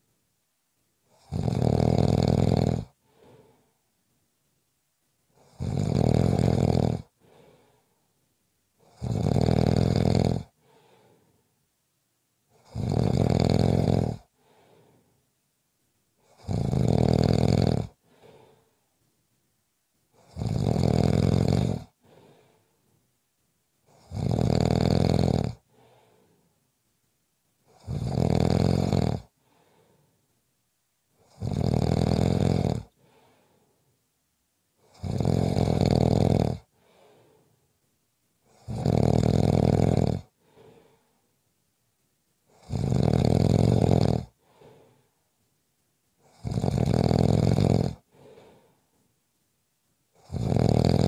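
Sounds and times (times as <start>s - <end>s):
person snoring: 1.1s - 3.7s, 5.4s - 7.8s, 8.8s - 11.3s, 12.5s - 15.1s, 16.2s - 18.8s, 20.2s - 22.7s, 23.9s - 26.5s, 27.7s - 30.1s, 31.2s - 33.6s, 34.8s - 37.5s, 38.5s - 41.1s, 42.5s - 45.1s, 46.2s - 48.8s, 50.1s - 51.0s
faint breath out: 3.0s - 3.9s, 7.1s - 8.2s, 10.6s - 11.6s, 14.3s - 15.3s, 18.0s - 18.9s, 21.9s - 23.1s, 25.6s - 26.7s, 29.4s - 30.3s, 32.9s - 34.0s, 36.7s - 37.7s, 40.4s - 41.4s, 44.4s - 45.3s, 48.0s - 49.1s.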